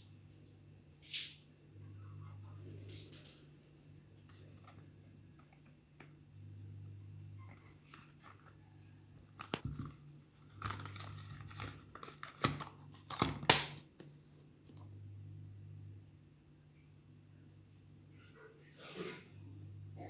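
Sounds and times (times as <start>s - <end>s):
crinkling and rustling handling noise: 4.2s - 6.1s, 7.4s - 14.8s.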